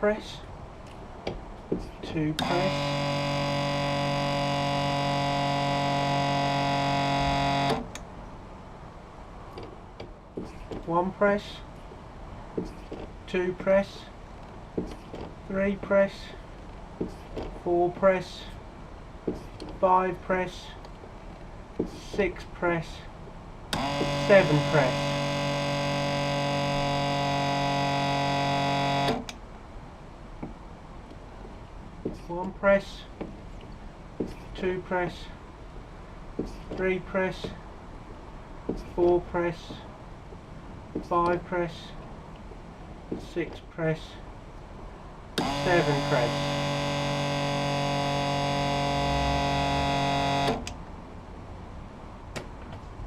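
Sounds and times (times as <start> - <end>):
hydraulic pump motor humming: 2.4 - 8.0, 23.7 - 29.4, 45.4 - 50.7.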